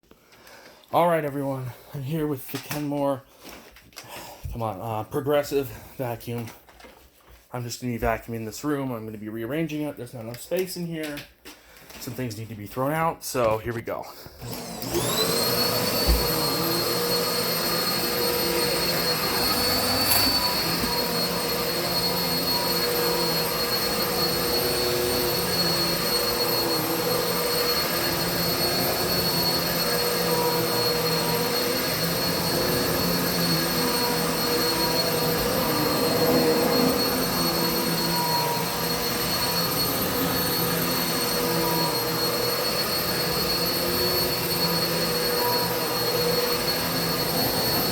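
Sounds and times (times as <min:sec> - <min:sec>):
vacuum cleaner motor whining: 0:14.3 - 0:47.9.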